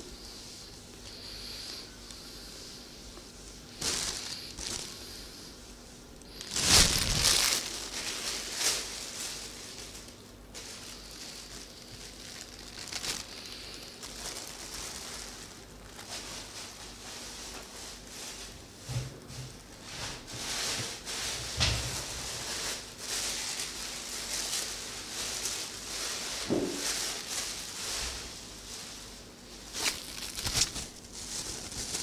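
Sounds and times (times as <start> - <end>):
tissue paper rustling: 0.0 - 18.6, 19.8 - 32.0
plastic bag crinkling: 3.6 - 5.4, 6.2 - 18.1, 22.0 - 32.0.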